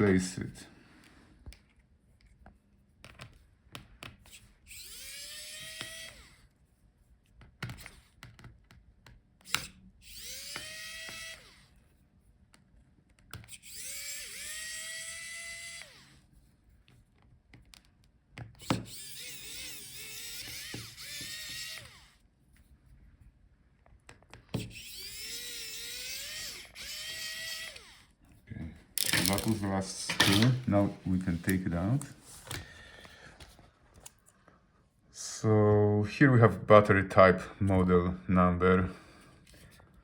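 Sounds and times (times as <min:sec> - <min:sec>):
electric screwdriver motor whining: 0:04.2 - 0:06.5, 0:09.4 - 0:11.8, 0:13.4 - 0:16.3, 0:18.5 - 0:22.2, 0:24.6 - 0:28.2, 0:29.0 - 0:29.7
light clicks of bit and screws: 0:29.0 - 0:30.8.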